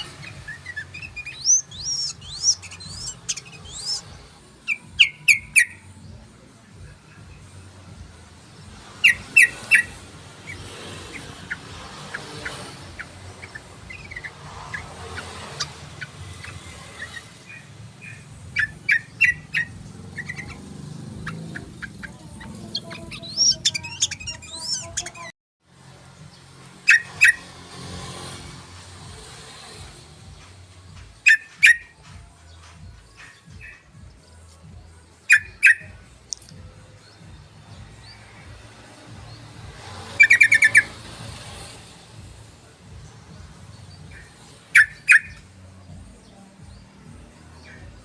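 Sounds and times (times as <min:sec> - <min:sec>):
bird sharp chirps: 0:00.0 - 0:05.8, 0:08.8 - 0:25.3
bird soft chattering: 0:00.3 - 0:04.0.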